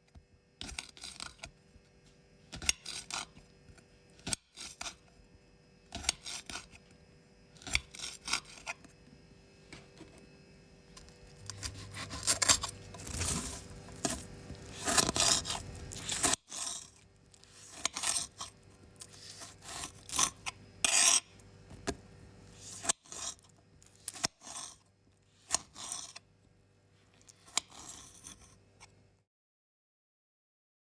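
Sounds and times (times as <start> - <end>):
knife cutting vegetables: 0.6 - 1.5, 2.5 - 3.5, 4.2 - 5.0, 5.9 - 6.8, 7.6 - 8.9, 11.0 - 24.8, 25.4 - 26.2, 27.2 - 28.9
knife scraping and rasping: 0.6 - 1.5, 2.5 - 5.1, 5.9 - 6.9, 7.6 - 9.0, 10.9 - 26.3, 27.0 - 29.0.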